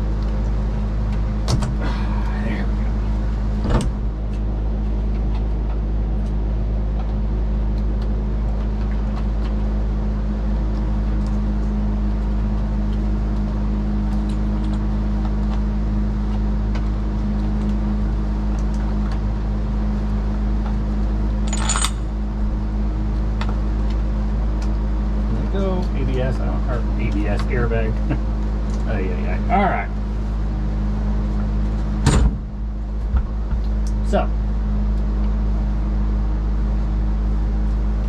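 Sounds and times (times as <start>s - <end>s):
fan humming: 0.0s - 38.0s
metallic clatter of tools: 21.5s - 22.1s.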